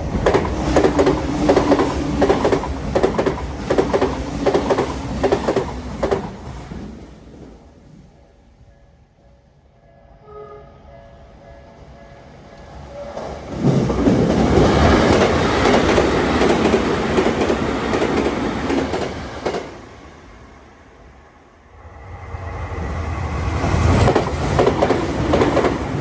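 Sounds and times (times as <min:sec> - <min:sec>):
electric train passing: 0:00.0 - 0:26.0
crossing warning bell: 0:08.1 - 0:13.4.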